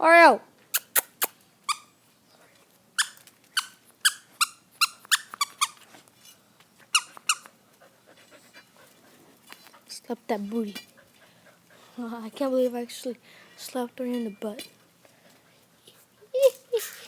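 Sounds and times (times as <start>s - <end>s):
short high-pitched squeaks: 3.0s - 6.4s.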